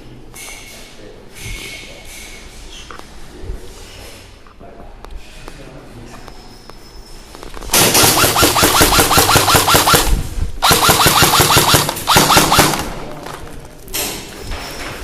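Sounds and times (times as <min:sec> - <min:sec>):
airsoft gun full-auto bursts: 0:07.8 - 0:12.9.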